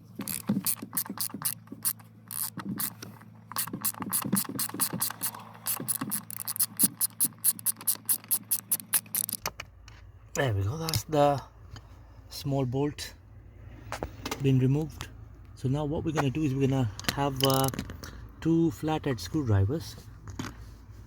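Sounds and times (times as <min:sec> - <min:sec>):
ratchet wrench clicking: 0:00.2 - 0:09.4, 0:17.3 - 0:17.8.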